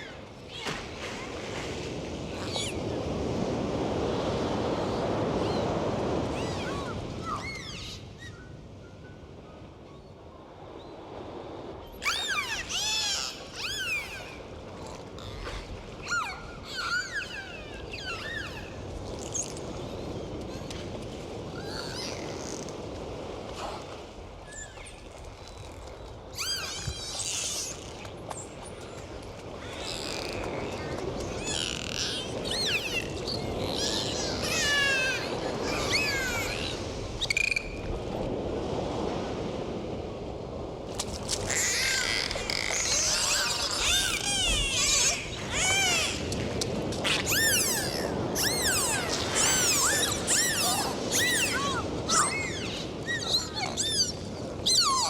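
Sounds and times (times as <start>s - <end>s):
sea noise hiss: 11.6s - 55.0s
dolphin high squeak: 12.0s - 14.4s, 15.2s - 19.5s, 26.4s - 28.0s, 29.7s - 37.7s, 41.5s - 46.3s, 47.0s - 55.0s
dolphins whistling: 12.0s - 14.5s, 15.2s - 19.8s, 26.4s - 28.0s, 29.7s - 37.8s, 41.5s - 46.3s, 47.0s - 55.0s.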